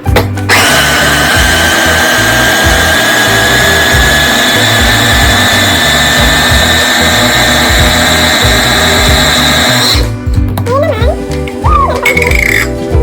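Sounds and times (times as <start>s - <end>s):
blender motor whine: 0.5s - 10.2s.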